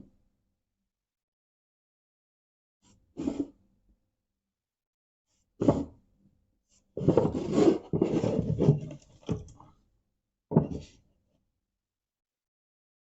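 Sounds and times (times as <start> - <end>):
rubbing and scraping handling noise: 7.0 - 9.6.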